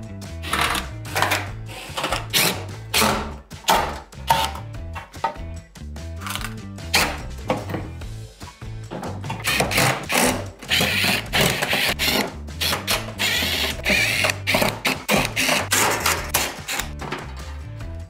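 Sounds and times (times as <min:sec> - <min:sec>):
background music: 0:00.0 - 0:18.0
power driver whirring: 0:09.3 - 0:16.9.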